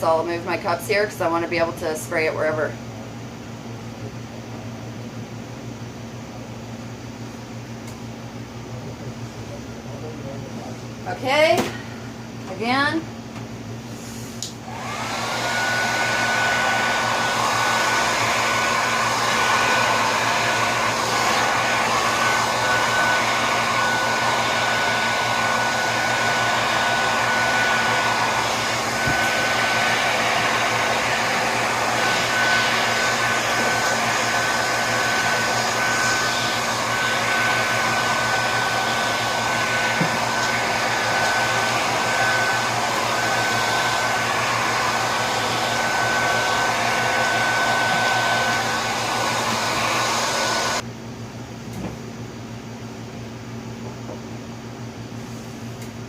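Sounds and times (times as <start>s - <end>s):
blow-dryer motor whine: 0.0s - 56.0s.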